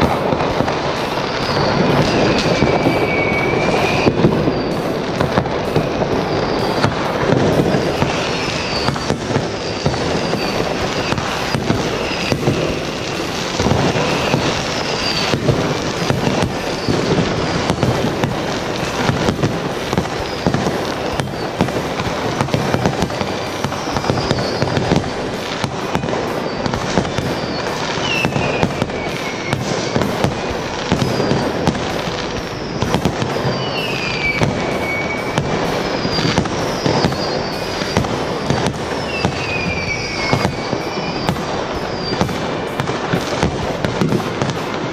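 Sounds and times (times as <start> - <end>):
falling firework whistles: 0.0 - 44.9
fireworks crackling and banging: 0.0 - 44.9.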